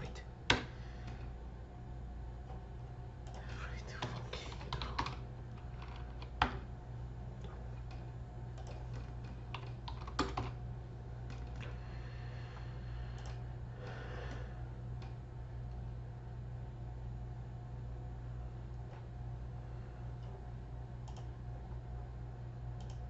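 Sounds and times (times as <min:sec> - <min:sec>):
steady low hum: 0:00.0 - 0:23.0
computer keyboard typing: 0:03.2 - 0:06.6, 0:07.8 - 0:10.6, 0:21.0 - 0:21.3.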